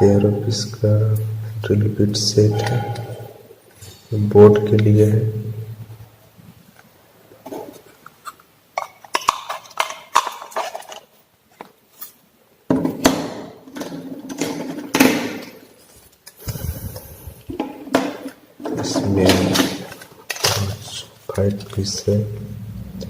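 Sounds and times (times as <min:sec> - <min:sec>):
drill bits and plastic case handled: 0:07.5 - 0:12.1, 0:17.9 - 0:21.8.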